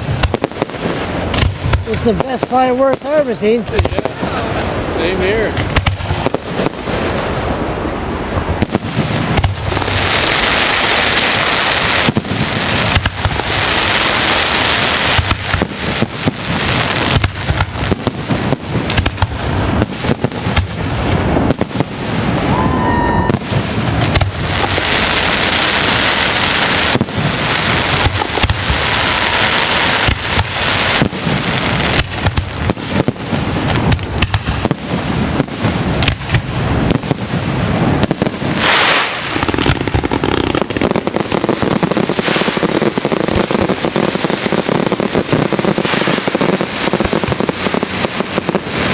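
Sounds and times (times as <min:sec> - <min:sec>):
fireworks booms: 0:00.0 - 0:48.9
fireworks crackling: 0:00.0 - 0:48.9
firework whistle: 0:21.5 - 0:27.3.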